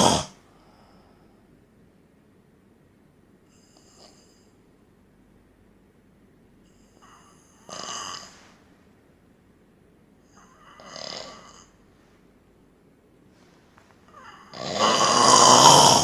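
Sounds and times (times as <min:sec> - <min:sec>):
man snoring: 0:00.0 - 0:00.4, 0:07.0 - 0:08.4, 0:10.4 - 0:11.8, 0:14.2 - 0:16.0
quiet breathing: 0:00.0 - 0:01.6, 0:03.4 - 0:04.9, 0:06.6 - 0:09.0, 0:10.2 - 0:16.0.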